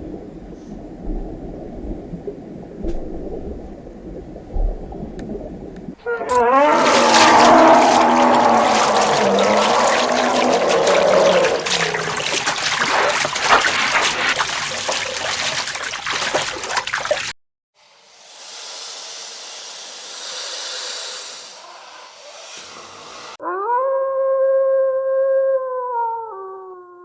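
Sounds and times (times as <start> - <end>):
water trickling and splashing: 0.0 - 17.4
steady hiss-like noise: 17.8 - 23.3.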